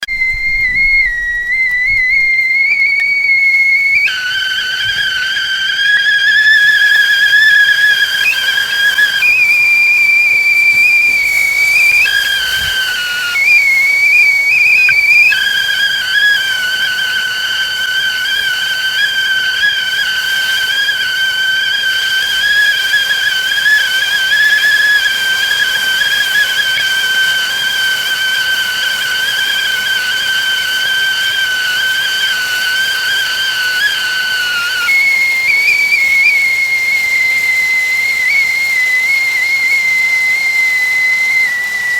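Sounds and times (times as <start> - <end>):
steam hissing: 0.0 - 41.9
tea kettle whistling: 0.0 - 41.9.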